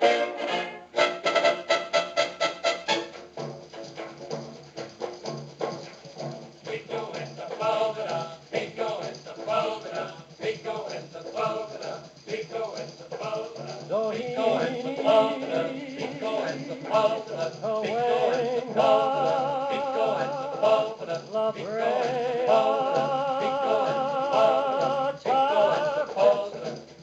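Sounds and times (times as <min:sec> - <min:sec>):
voices singing over big band: 0:06.6 - 0:27.0.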